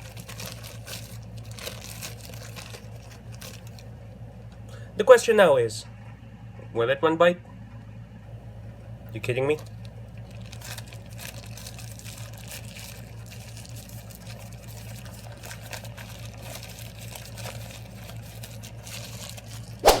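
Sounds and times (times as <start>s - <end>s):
steady low hum: 0.0s - 10.4s.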